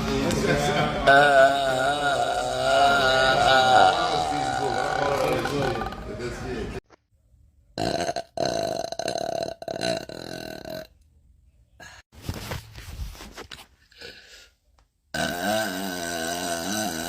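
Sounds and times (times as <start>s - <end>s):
woman burping loudly: 1.0s - 6.2s, 7.8s - 10.9s, 15.2s - 17.0s.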